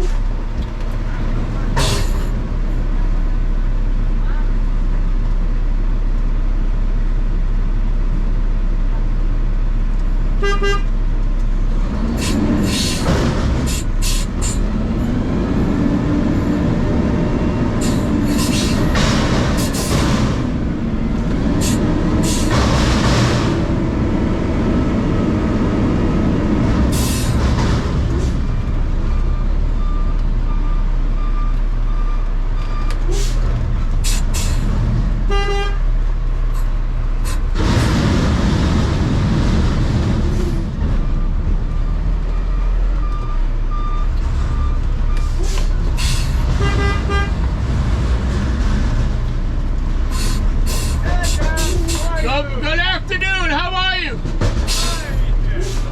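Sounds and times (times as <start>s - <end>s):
diesel truck engine rumbling: 0.0s - 55.9s.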